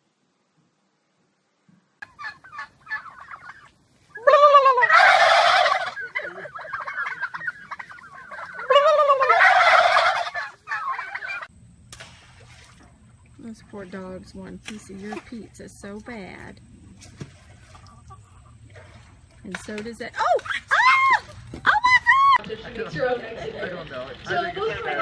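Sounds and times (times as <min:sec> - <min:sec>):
soft turkey calls: 0:02.0 - 0:11.5
turkey gobbling: 0:02.0 - 0:11.5.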